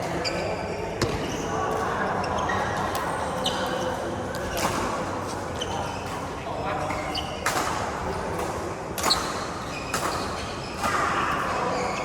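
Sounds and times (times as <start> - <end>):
rackets hitting shuttlecock: 6.0 - 11.5.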